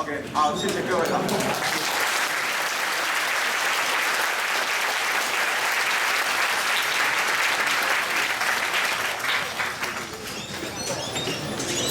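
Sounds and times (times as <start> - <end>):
audience applauding: 0.8 - 10.8.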